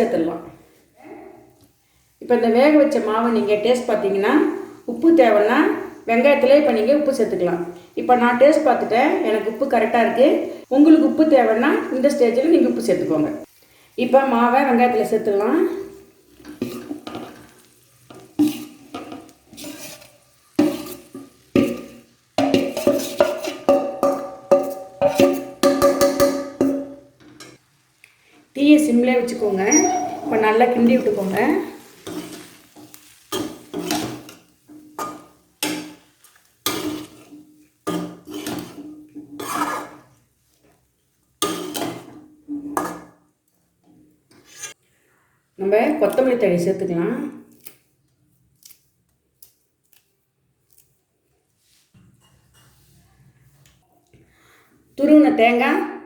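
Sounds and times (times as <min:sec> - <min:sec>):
metal spoon scraping a pan: 0:16.2 - 0:27.6, 0:29.3 - 0:40.2, 0:41.4 - 0:43.1, 0:44.3 - 0:44.8, 0:52.1 - 0:53.0
ringing knocks: 0:29.7 - 0:30.4.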